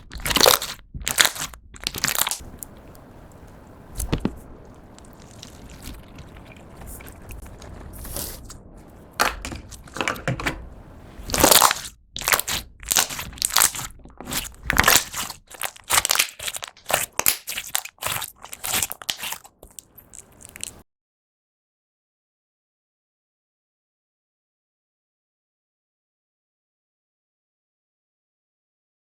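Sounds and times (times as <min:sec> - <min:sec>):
slime squeezed by hand crackling: 0:00.0 - 0:03.0, 0:11.2 - 0:20.8.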